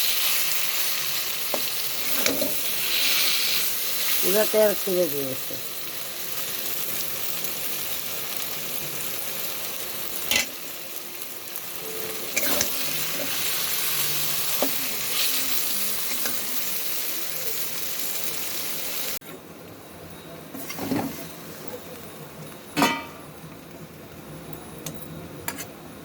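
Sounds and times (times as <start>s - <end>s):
food sizzling in oil: 0.0s - 19.2s
spoon knocking against pan: 22.8s - 23.3s.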